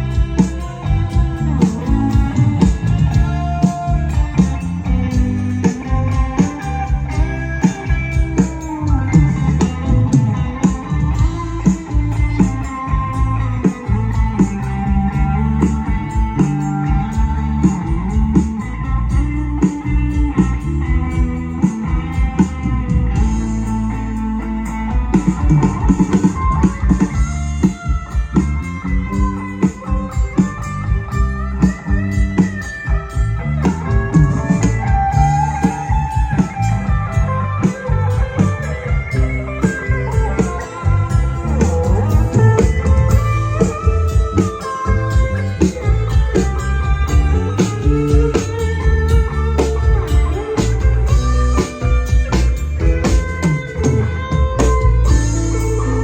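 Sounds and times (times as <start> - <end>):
guitar: 0.0 - 56.0
live band playing instrumental: 0.0 - 56.0
drum strokes: 24.7 - 56.0.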